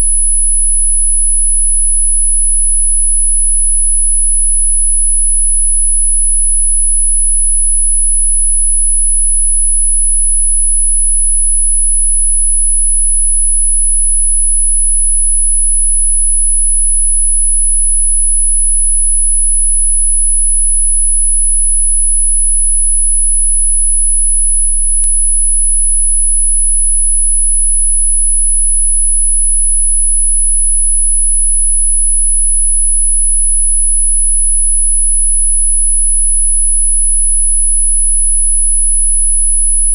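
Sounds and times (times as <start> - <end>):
high-pitched sine tone: 0.0 - 39.9.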